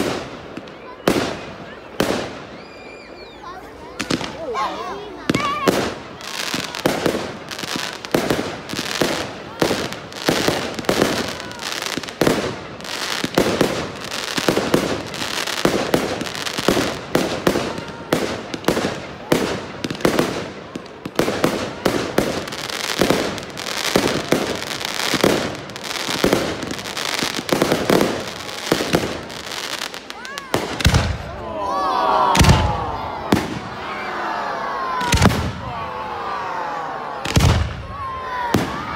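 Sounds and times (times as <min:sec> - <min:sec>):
fireworks bangs and crackles: 0:00.0 - 0:31.5, 0:32.3 - 0:33.9, 0:35.0 - 0:38.9.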